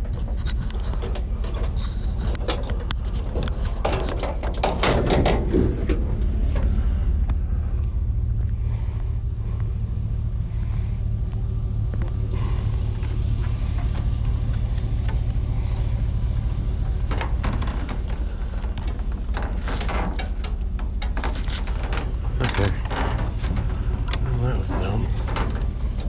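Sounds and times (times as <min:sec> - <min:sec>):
knocks and rattles: 0:00.0 - 0:26.0
vehicle driving rumble: 0:00.0 - 0:26.0.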